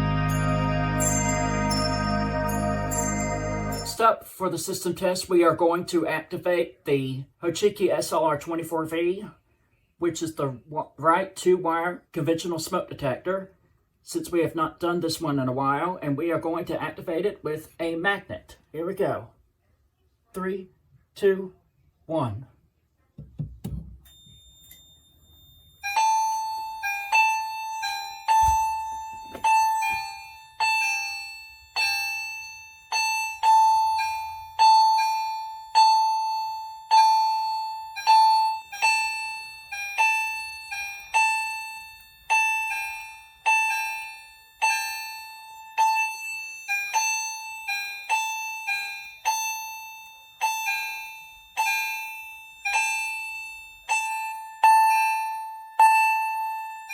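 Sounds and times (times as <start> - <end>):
fire alarm electronic chimes: 0.0 - 4.0, 24.0 - 56.9.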